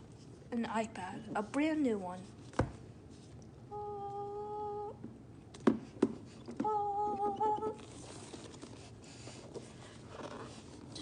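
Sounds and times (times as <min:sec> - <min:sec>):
person humming: 0:03.7 - 0:05.0, 0:06.6 - 0:07.8.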